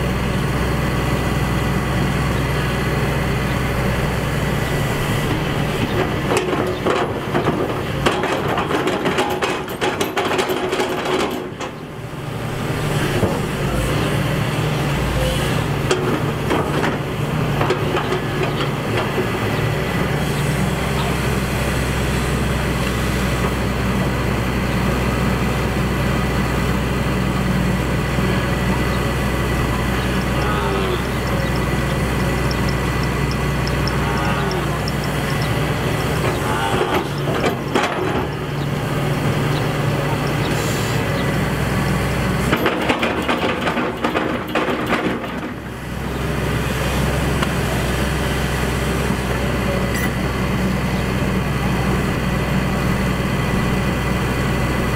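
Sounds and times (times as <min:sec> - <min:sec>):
excavator engine running: 0:00.0 - 0:54.9
rapid knocks and clanks: 0:05.9 - 0:11.8, 0:36.2 - 0:38.5, 0:42.5 - 0:45.6.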